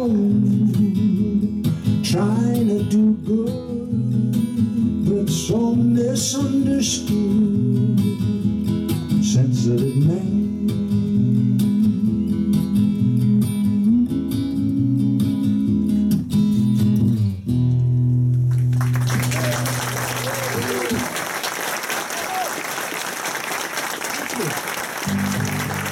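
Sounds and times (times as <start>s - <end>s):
acoustic guitar strumming: 0.0s - 18.8s, 25.0s - 25.9s.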